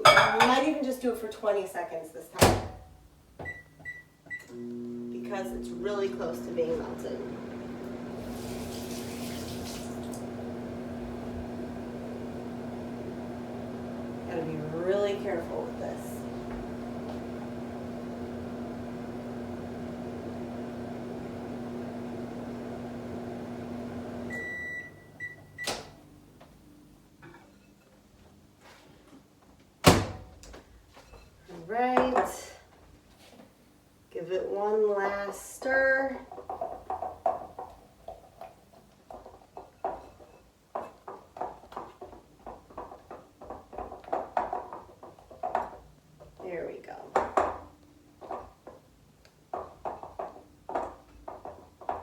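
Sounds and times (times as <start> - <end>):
microwave beeps: 3.4 - 5.0, 23.4 - 26.0
microwave oven humming: 4.4 - 26.4.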